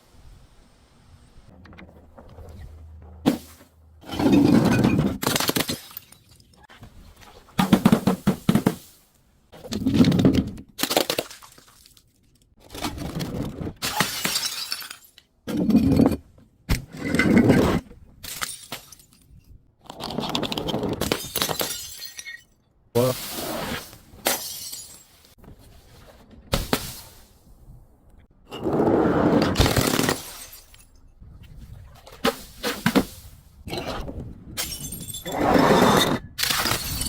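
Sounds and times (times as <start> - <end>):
glass bottles smashing: 3.3 - 6.7, 13.8 - 15.2, 18.2 - 19.4, 21.0 - 22.6, 24.2 - 25.2, 29.6 - 31.0, 34.6 - 35.4, 36.4 - 37.0.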